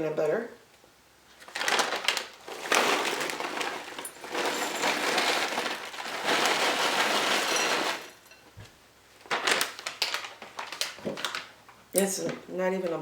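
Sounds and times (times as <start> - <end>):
cereal pouring into a bowl: 1.5 - 8.3.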